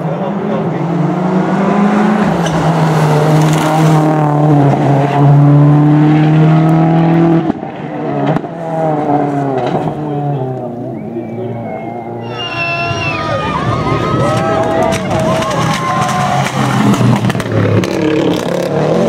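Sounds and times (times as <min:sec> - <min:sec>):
rally car engine at high revs: 0:00.0 - 0:11.1, 0:15.0 - 0:19.0.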